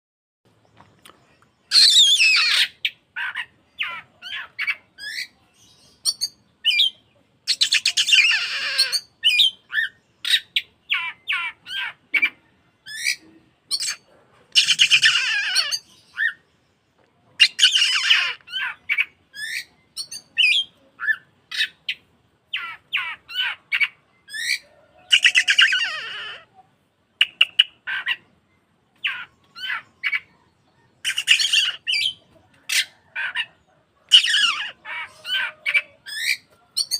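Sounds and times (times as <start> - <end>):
bird whistling song: 1.7 - 3.0, 5.0 - 11.4, 17.4 - 21.8, 23.8 - 26.2
bird harsh rasping calls: 1.7 - 16.5, 17.4 - 28.4, 29.0 - 30.4, 31.0 - 36.9.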